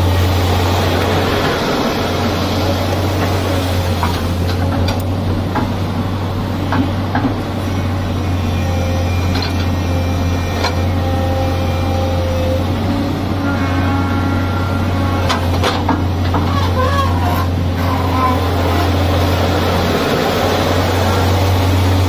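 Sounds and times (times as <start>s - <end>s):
excavator engine humming: 0.0s - 22.0s.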